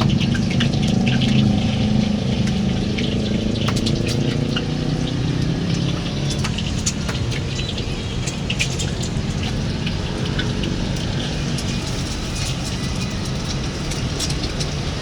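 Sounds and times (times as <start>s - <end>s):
rice sizzling in a wok: 4.6s - 15.0s.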